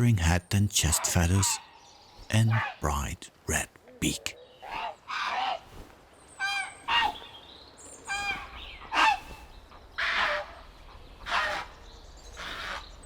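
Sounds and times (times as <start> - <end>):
herons croaking: 0.0 - 5.7, 6.4 - 13.0.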